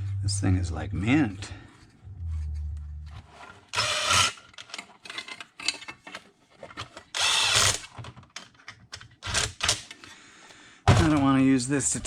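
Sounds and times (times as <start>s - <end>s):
power drill whirring: 3.7s - 4.6s, 7.2s - 7.9s.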